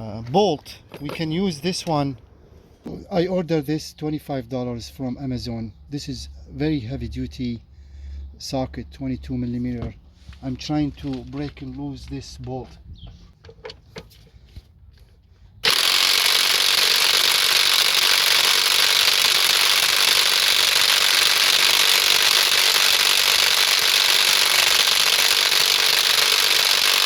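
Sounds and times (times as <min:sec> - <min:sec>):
impact wrench hammering: 0:15.6 - 0:27.0.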